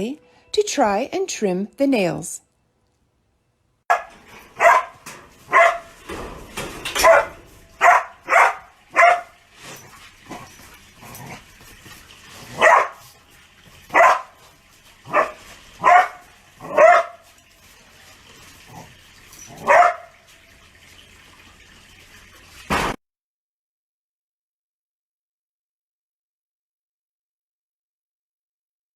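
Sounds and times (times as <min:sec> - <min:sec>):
small dog barking: 0:03.9 - 0:05.9, 0:07.0 - 0:09.4, 0:12.5 - 0:13.0, 0:13.9 - 0:14.4, 0:15.1 - 0:17.2, 0:19.6 - 0:20.2.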